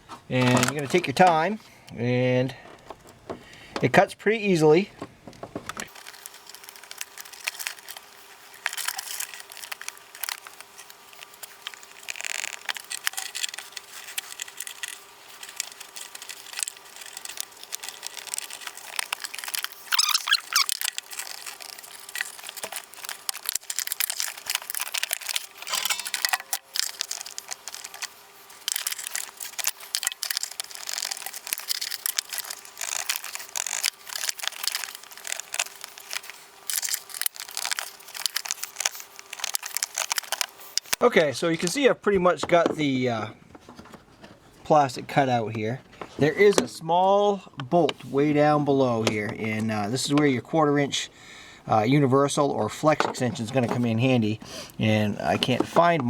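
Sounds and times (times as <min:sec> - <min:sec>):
utility knife cutting plastic: 0:05.3 - 0:41.0.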